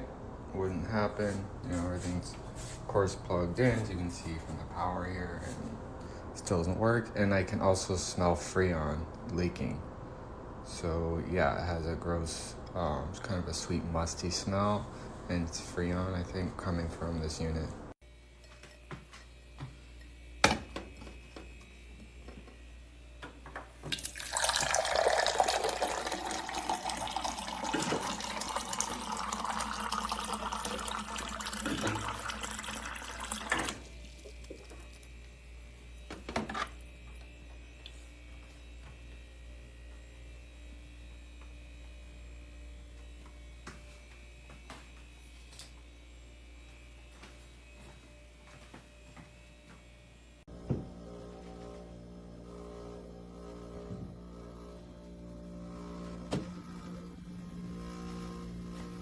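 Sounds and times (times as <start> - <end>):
water filling a cup: 23.9 - 35.1.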